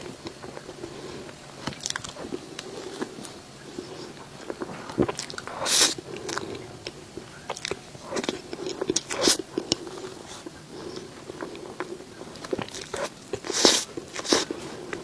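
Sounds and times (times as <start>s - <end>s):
wet mouth clicks and chewing: 0.0s - 15.0s
hissy bites: 4.6s - 6.4s.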